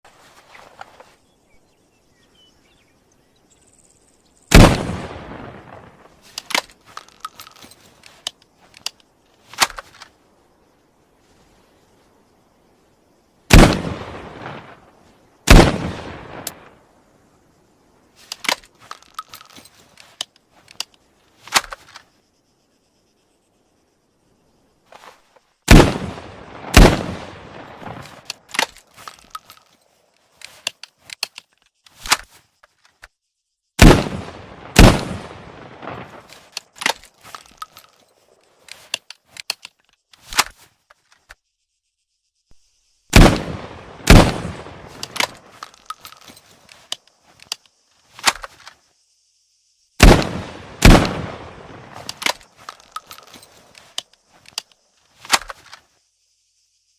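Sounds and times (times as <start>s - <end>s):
shotgun shots: 4.5s - 5.9s, 13.5s - 14.7s, 15.5s - 16.5s, 25.7s - 28.7s, 33.8s - 36.2s, 43.1s - 45.4s, 50.0s - 52.2s
gun mechanism clicks and clacks: 6.3s - 10.1s, 18.2s - 22.1s, 28.0s - 33.1s, 36.3s - 41.4s, 44.9s - 48.8s, 52.0s - 55.8s.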